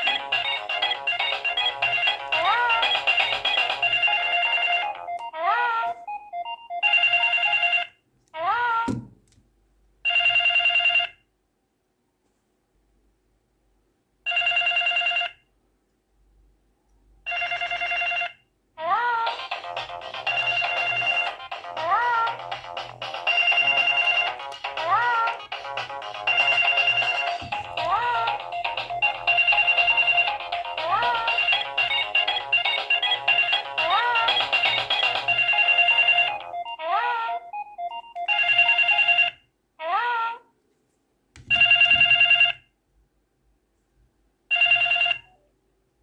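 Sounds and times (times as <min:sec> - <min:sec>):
melodic ringtone with sliding notes: 0:00.0 - 0:07.8, 0:19.2 - 0:39.3.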